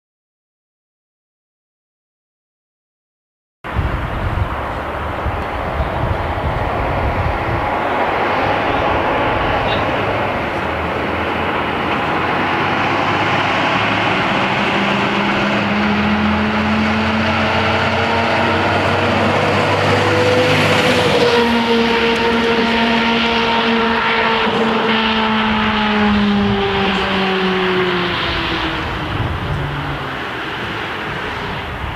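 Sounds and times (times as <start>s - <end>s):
road noise: 3.6s - 31.9s
vehicle engine drone: 3.7s - 31.9s.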